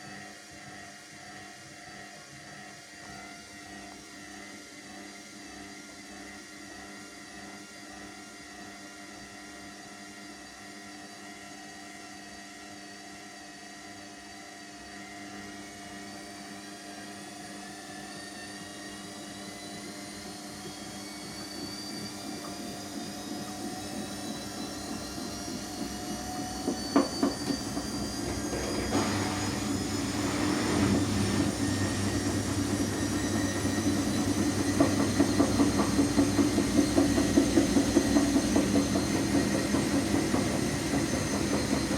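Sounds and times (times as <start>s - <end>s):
washing machine motor whine: 0.0s - 41.9s.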